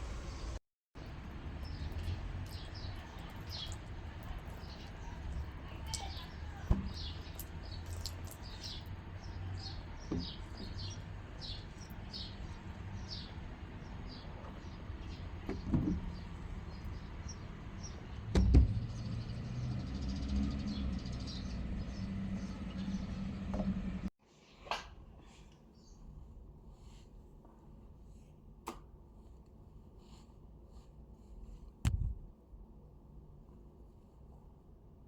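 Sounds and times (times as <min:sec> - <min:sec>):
steady low hum: 0:31.8 - 0:32.4.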